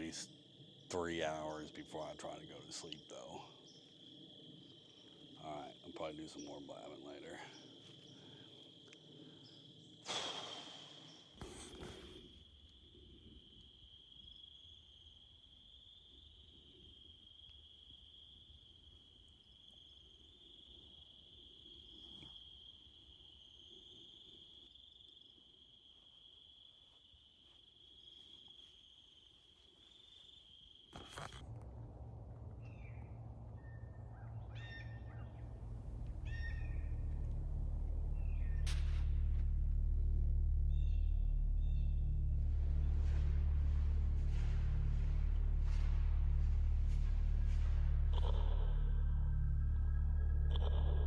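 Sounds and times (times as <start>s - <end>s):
insects trilling: 0.0s - 51.0s
low rumble: 31.4s - 51.0s
bird chirps: 32.5s - 39.2s, 40.6s - 51.0s.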